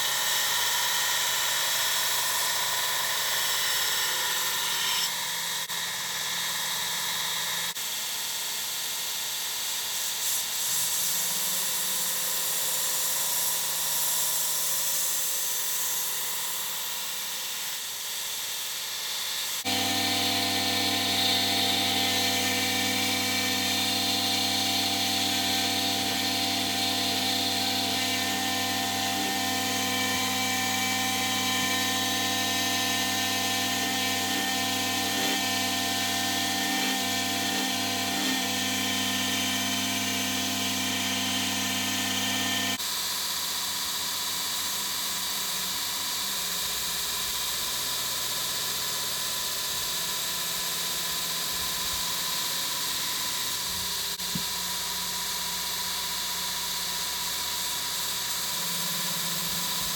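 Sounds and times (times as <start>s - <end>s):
power tool motor humming: 19.6s - 42.8s.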